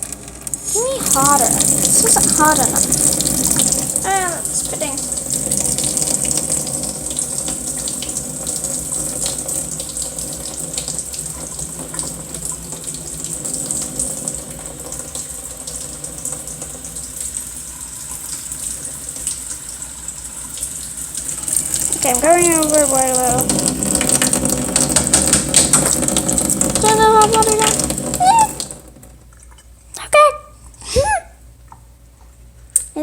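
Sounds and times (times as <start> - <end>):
tap water running: 0.0 - 33.0
water splashing over container: 0.6 - 8.2, 21.9 - 28.7.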